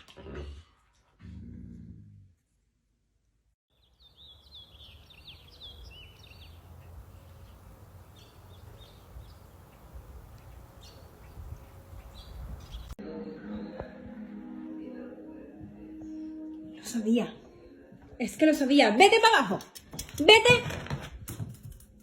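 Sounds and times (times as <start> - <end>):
small birds chirping: 3.7 - 13.0
low outdoor rumble: 5.3 - 13.0.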